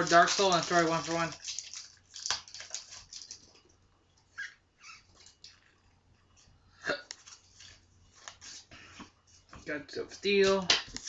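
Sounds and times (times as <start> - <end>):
trading cards rustling: 0.0 - 3.6
foil wrapper rustling: 0.0 - 3.7.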